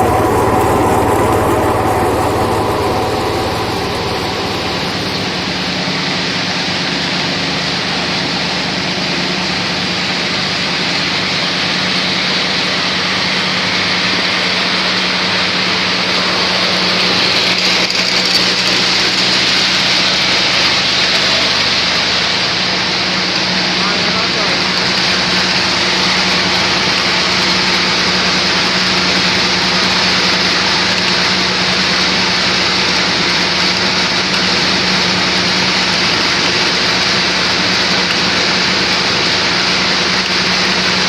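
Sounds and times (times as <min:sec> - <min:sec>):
machine motor hum: 0:00.0 - 0:06.3.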